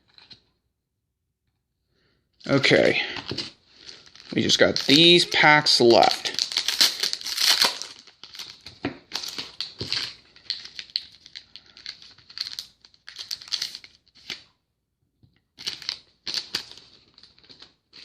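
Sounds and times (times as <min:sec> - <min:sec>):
foil wrappers crinkling and tearing: 0:02.5 - 0:14.4, 0:15.6 - 0:18.0.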